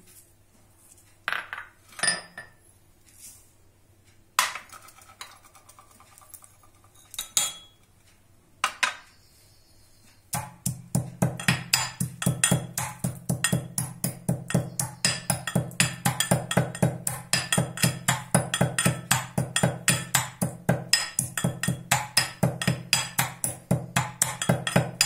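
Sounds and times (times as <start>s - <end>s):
pestle pounding spices in mortar: 10.3s - 25.0s.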